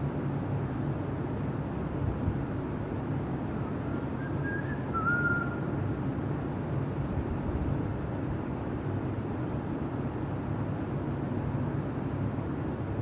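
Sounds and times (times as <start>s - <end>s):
short high whistle: 4.2s - 5.6s.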